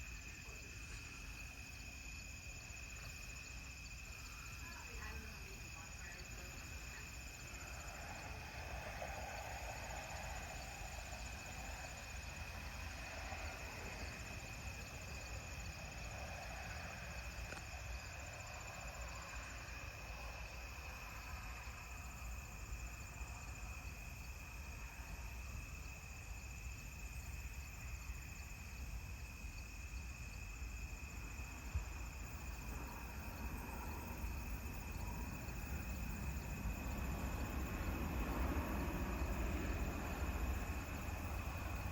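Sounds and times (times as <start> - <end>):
crickets chirping: 0.0 - 41.9.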